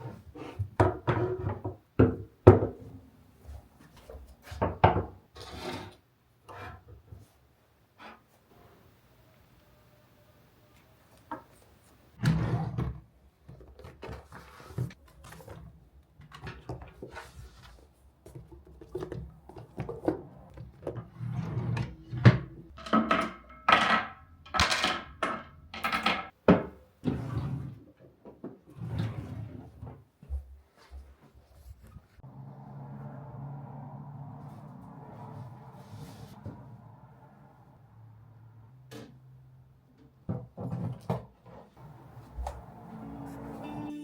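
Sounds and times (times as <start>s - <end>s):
rustling and scraping of pages: 13.5s - 21.9s, 34.4s - 36.6s.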